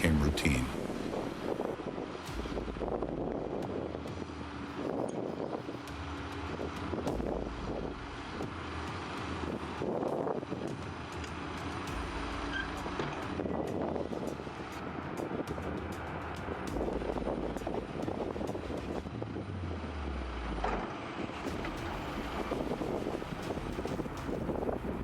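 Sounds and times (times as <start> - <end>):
diesel engine running under load: 16.2 - 25.0.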